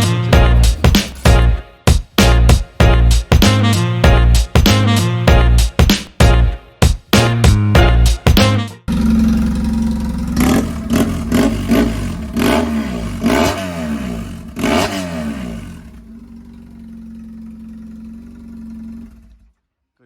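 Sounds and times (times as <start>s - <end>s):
motorcycle engine revving and idling: 8.9s - 19.6s.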